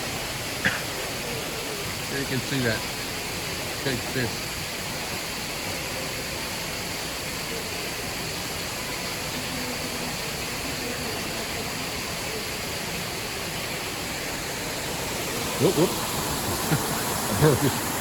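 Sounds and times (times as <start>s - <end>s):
waterfall pouring into pool: 0.0s - 18.0s.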